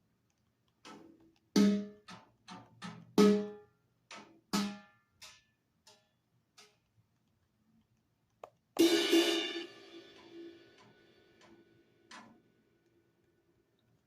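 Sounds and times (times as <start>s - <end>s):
drum hits: 8.8s - 10.6s
cymbal crash: 8.8s - 11.3s.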